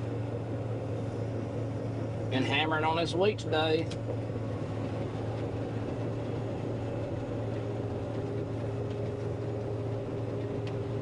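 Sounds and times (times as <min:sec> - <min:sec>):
combine harvester droning: 0:00.0 - 0:11.0.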